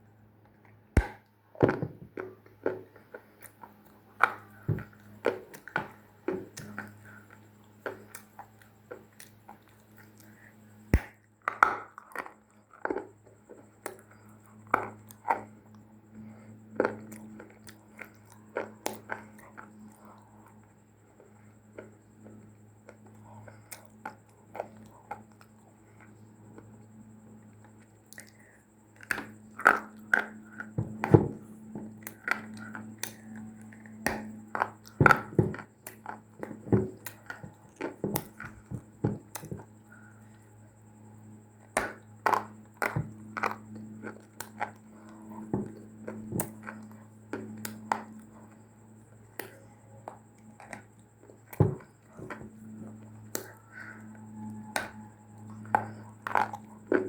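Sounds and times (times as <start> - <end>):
steady low hum: 0.0 - 57.0
dry clay crunching in mouth: 2.1 - 15.5, 27.6 - 40.5, 41.6 - 48.5, 55.6 - 57.0.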